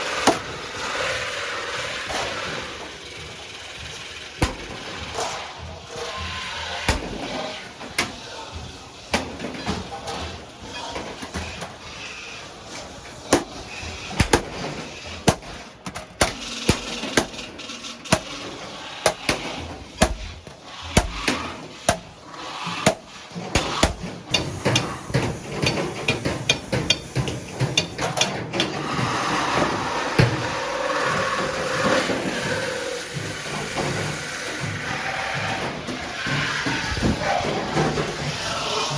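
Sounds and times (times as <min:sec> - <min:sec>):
rough steady noise: 0:00.0 - 0:28.2
hammer striking iron: 0:04.4 - 0:04.9, 0:06.9 - 0:07.4, 0:13.3 - 0:28.4.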